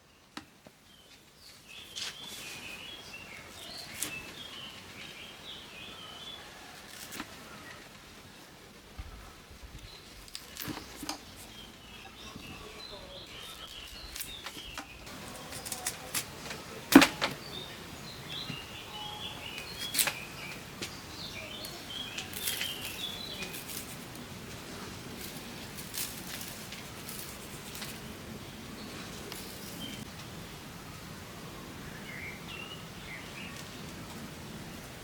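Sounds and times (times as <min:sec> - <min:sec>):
small birds chirping: 0:08.9 - 0:30.1.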